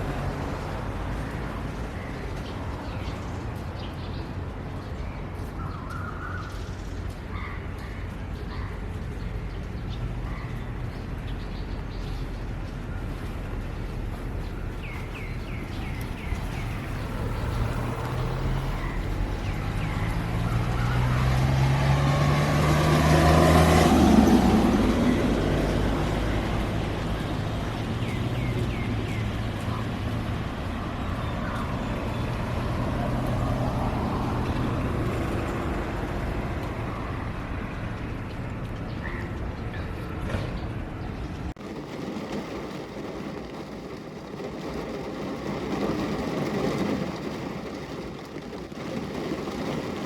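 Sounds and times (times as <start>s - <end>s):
vehicle engine passing by: 13.9s - 38.8s.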